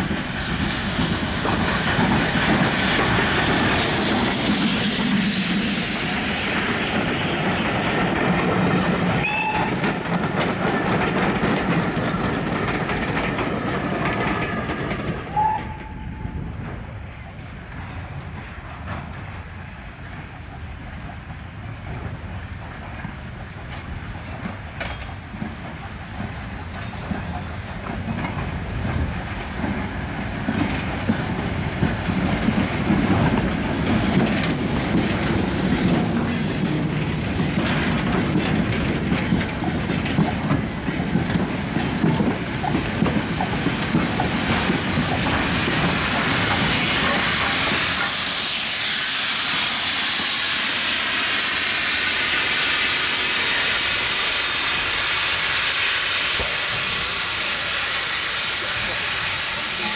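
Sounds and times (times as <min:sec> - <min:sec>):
steam hiss: 0:00.0 - 0:09.8, 0:19.7 - 0:22.3, 0:25.4 - 0:59.9
steam train passing: 0:00.0 - 0:59.9
wheels clicking over rail joints: 0:08.0 - 0:16.0, 0:20.6 - 0:48.1.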